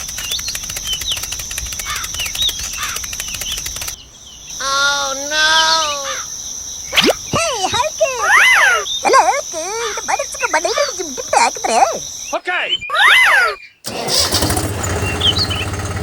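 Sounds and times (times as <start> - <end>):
high insect trill: 0.0 - 13.6
birds chirping: 0.0 - 16.0
long wavering call: 4.6 - 6.3.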